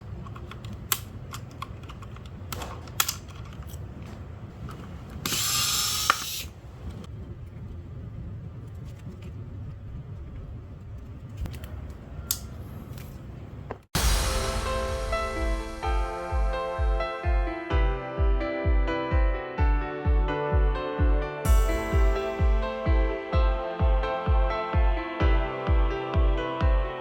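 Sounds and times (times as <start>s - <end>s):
music: 14.0s - 27.0s.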